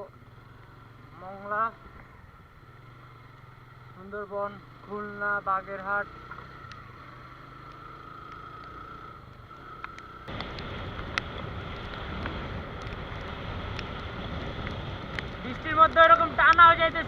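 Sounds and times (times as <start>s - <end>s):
wind and road noise rushing: 0.0s - 5.2s, 6.0s - 17.0s
steady motorcycle whine: 0.0s - 17.0s
sharp ticks: 6.2s - 6.9s, 7.5s - 16.8s.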